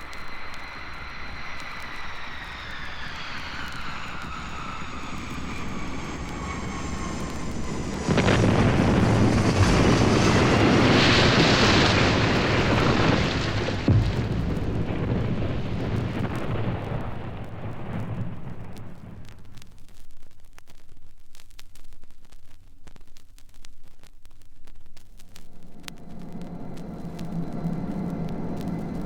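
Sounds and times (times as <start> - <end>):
plane crash: 0.0 - 19.7, 25.5 - 29.0
aircraft engine whining: 0.3 - 15.8, 25.6 - 29.0
sharp bang: 12.0 - 17.4.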